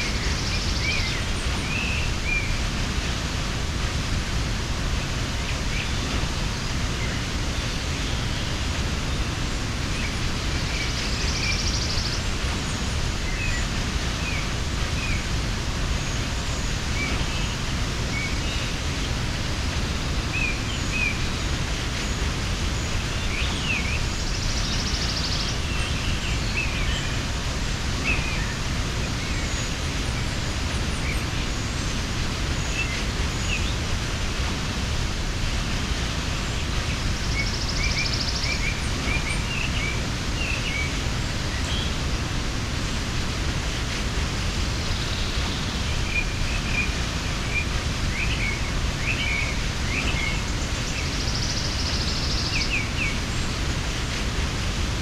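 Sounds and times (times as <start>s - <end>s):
small birds chirping: 0.0s - 55.0s
waterfall rushing: 0.0s - 55.0s.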